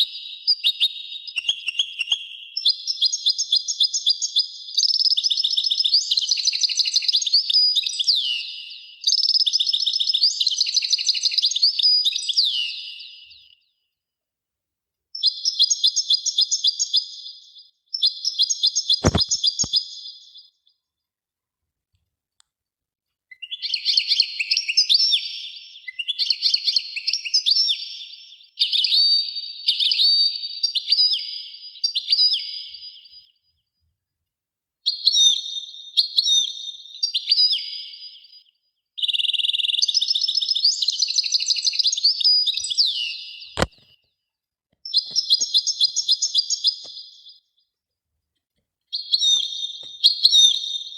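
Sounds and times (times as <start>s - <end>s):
songbird chirping and trilling: 0.0s - 13.8s, 15.2s - 20.7s, 23.3s - 33.4s, 34.9s - 43.9s, 44.9s - 47.6s, 48.9s - 50.9s
sharp click: 19.0s - 19.8s, 43.6s - 43.9s.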